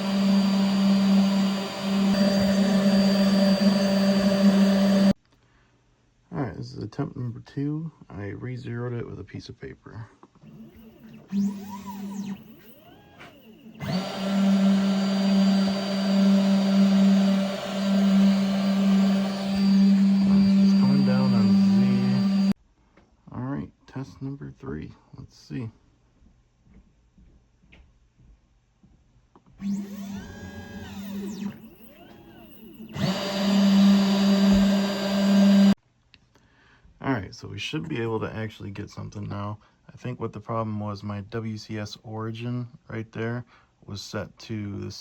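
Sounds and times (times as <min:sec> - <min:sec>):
motor humming: 0:00.0 - 0:05.2, 0:10.4 - 0:22.6, 0:29.6 - 0:35.8
stepper motors whining: 0:00.0 - 0:05.2, 0:10.4 - 0:22.6, 0:29.6 - 0:35.8.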